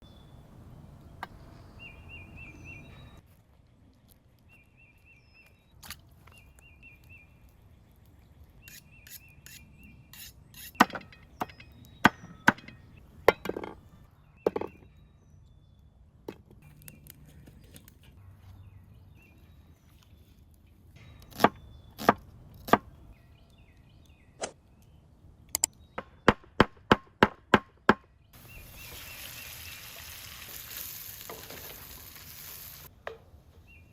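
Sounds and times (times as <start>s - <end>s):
bird chirping: 0.0s - 3.2s, 4.4s - 16.0s, 21.0s - 26.4s, 28.1s - 30.4s, 33.6s - 33.9s
food sizzling in a hot pan: 28.6s - 32.9s.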